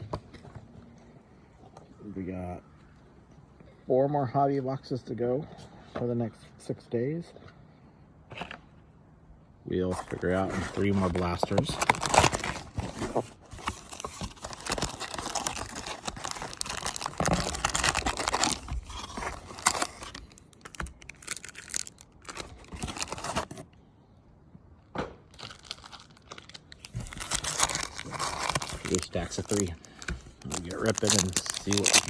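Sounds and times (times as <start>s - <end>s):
card packs crinkling and tearing: 9.8s - 23.7s, 25.3s - 32.0s.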